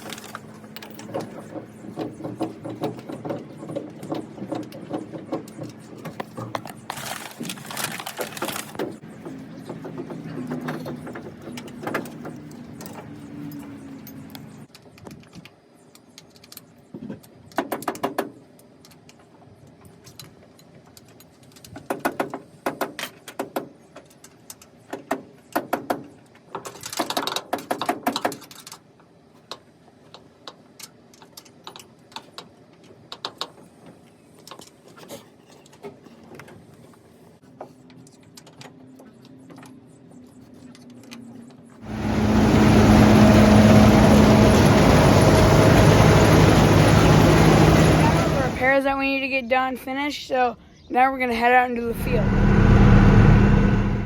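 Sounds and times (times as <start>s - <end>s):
low steady hum: 51.8s - 54.0s.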